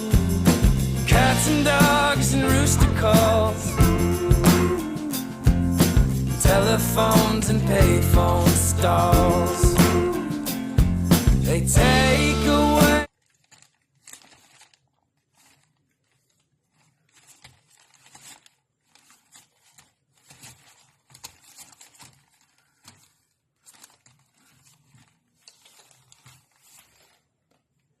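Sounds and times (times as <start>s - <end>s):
scuffling and rustling: 12.0s - 27.8s.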